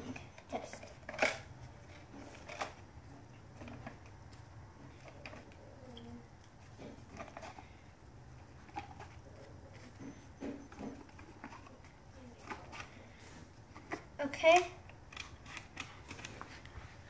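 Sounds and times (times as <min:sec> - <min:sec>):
plastic clicks and rustles: 0:00.0 - 0:07.7.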